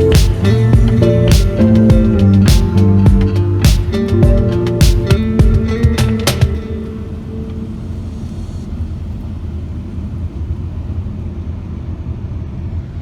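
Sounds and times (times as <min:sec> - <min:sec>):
guitar music: 0:00.0 - 0:08.3
steady low rumble: 0:00.0 - 0:13.0.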